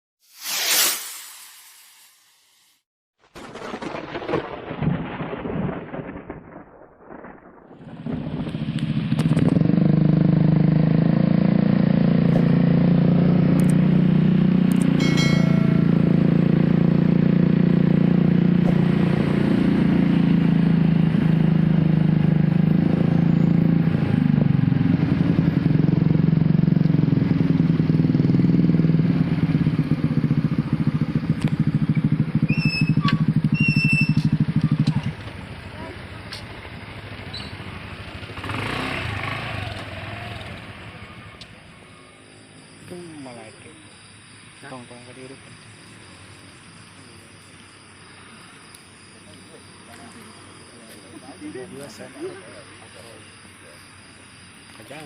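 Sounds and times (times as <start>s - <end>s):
motorcycle engine running: 8.0s - 41.4s.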